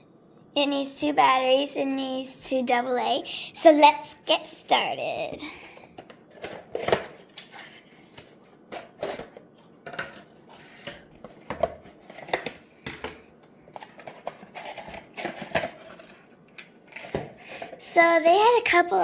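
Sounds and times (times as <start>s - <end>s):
toy packaging being opened: 13.8s - 16.2s.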